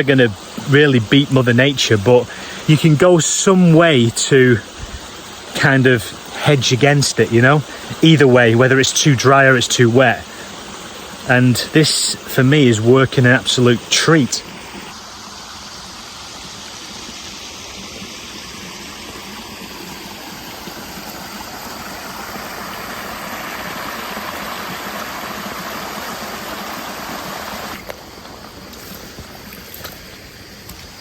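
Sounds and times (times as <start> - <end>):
floodwater rushing through canal: 0.0 - 31.0.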